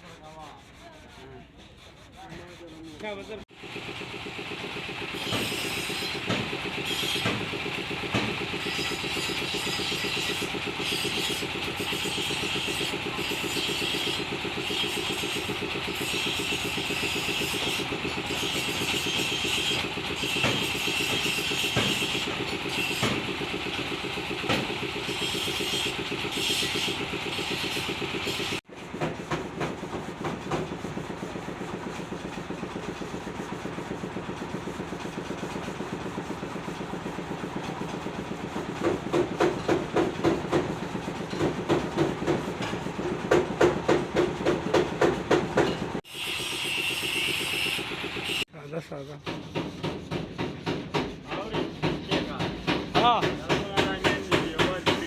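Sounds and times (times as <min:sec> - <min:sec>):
engine idling: 0:03.5 - 0:09.5
sharp knocks: 0:49.2 - 0:55.0.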